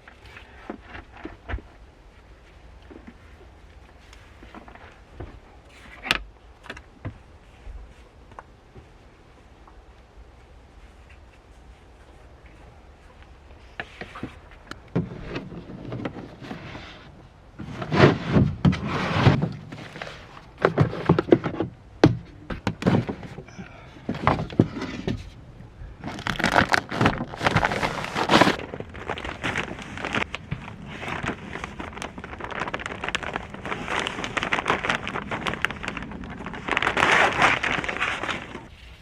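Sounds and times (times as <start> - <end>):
objects knocking and thunking: 13.8 - 16.8, 17.6 - 34.8
objects scraping: 13.8 - 21.7.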